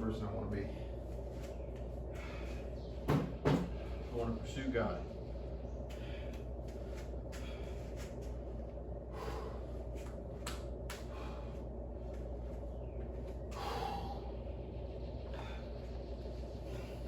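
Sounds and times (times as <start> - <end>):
low hum: 0.0 - 17.0
person breathing heavily: 2.0 - 2.8, 5.9 - 8.4, 9.0 - 10.2, 10.9 - 12.3, 13.4 - 14.6, 15.2 - 17.0.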